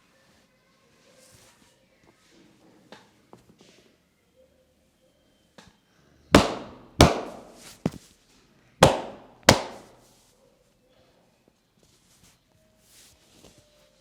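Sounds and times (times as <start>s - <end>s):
hand slaps on skin: 8.8s - 9.9s.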